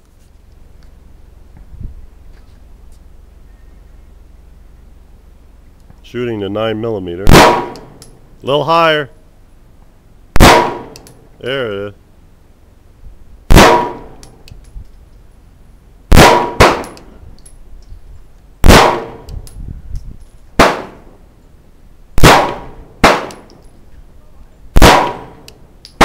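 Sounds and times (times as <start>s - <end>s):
pistol shots echoing: 7.3s - 8.0s, 10.4s - 11.0s, 13.5s - 14.2s, 16.1s - 17.1s, 18.6s - 19.3s, 20.6s - 21.1s, 22.2s - 23.5s, 24.8s - 25.5s.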